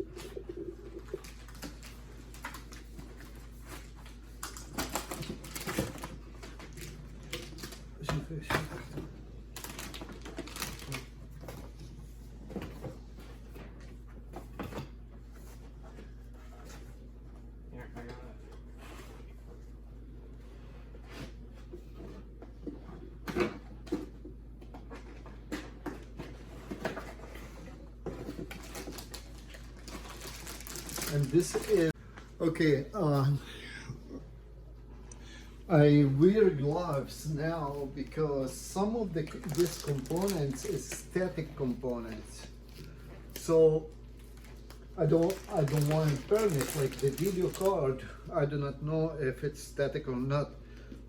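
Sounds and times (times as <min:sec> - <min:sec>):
packaging clicks and rustles: 0:01.0 - 0:11.5, 0:28.3 - 0:31.9, 0:39.0 - 0:47.9
packaging rustling and tapping: 0:28.3 - 0:31.9, 0:39.2 - 0:41.1, 0:44.2 - 0:47.8.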